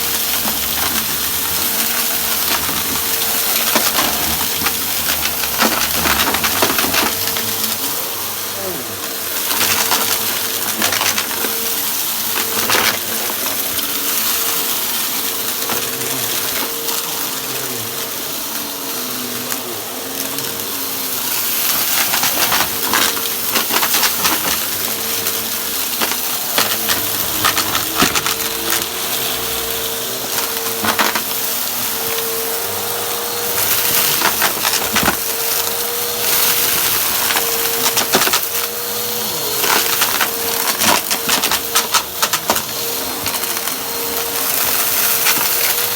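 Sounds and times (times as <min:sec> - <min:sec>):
debris rattling through vacuum: 0:00.0 - 0:45.9
vacuum cleaner running: 0:00.0 - 0:45.9.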